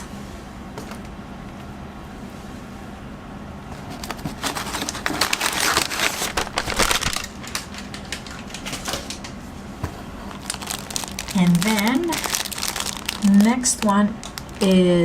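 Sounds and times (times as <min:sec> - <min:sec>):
packaging crinkling: 0:03.8 - 0:09.2, 0:10.2 - 0:14.8.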